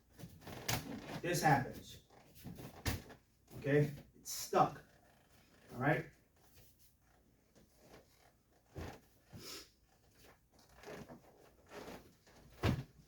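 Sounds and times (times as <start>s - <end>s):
soft thumps and rustles: 7.6s - 9.4s, 10.0s - 13.0s.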